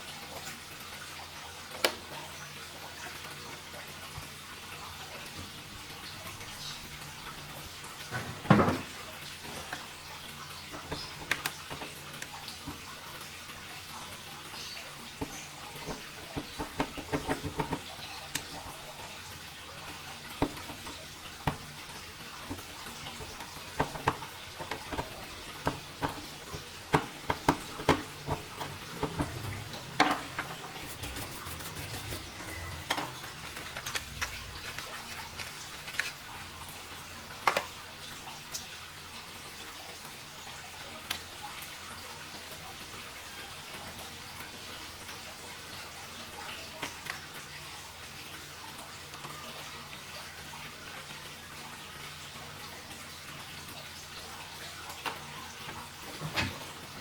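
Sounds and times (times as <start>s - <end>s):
knock: 8.2s - 8.9s
clicks and taps of small objects: 15.2s - 18.6s.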